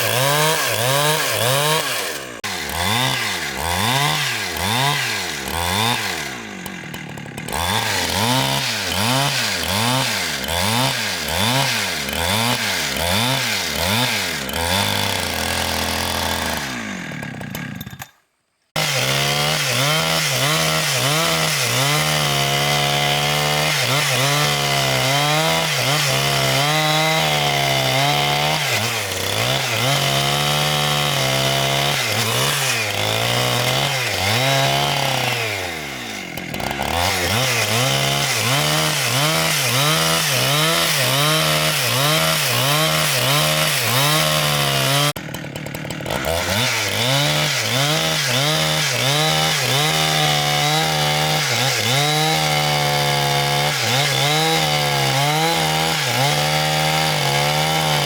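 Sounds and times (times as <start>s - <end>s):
chainsaw cutting timber: 0.0s - 58.0s.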